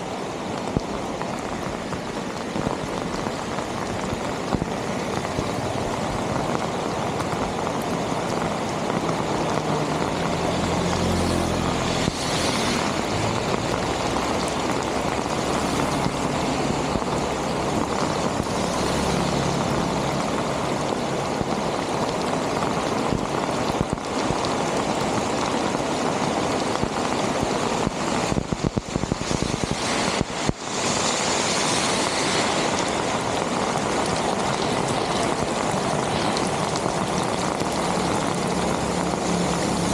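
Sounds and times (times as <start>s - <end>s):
rainwater rushing: 0.0s - 39.9s.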